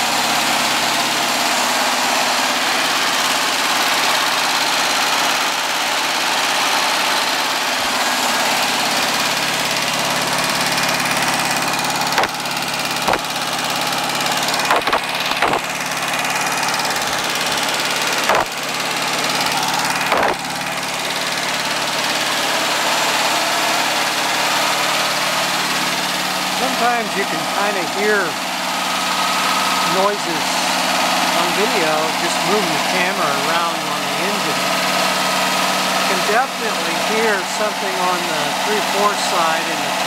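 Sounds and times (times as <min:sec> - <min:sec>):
car engine fast idle: 0:00.0 - 0:40.0
engine tappet noise: 0:00.0 - 0:40.0
camera knocking on engine: 0:12.0 - 0:13.5, 0:14.4 - 0:20.6.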